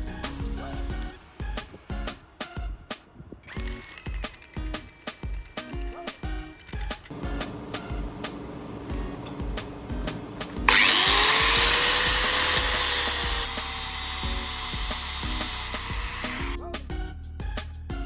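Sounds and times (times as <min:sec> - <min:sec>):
background music with steady beat: 0:00.0 - 0:18.0
power tool hissing and whining: 0:03.5 - 0:16.6.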